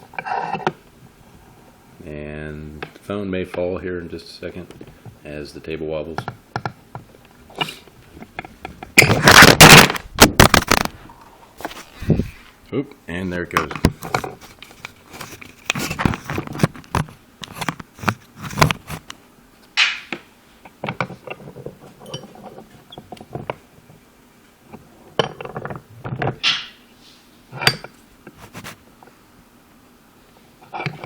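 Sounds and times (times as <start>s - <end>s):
tools and metal parts clinking: 20.9s - 23.2s.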